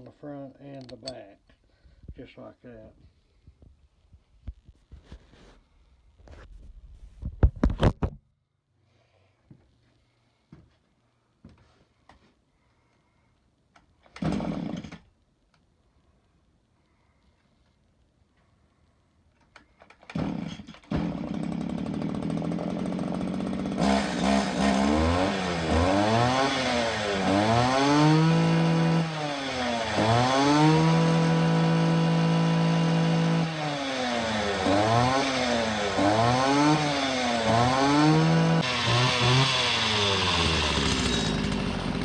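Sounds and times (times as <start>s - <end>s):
string trimmer engine revving: 20.1s - 42.0s.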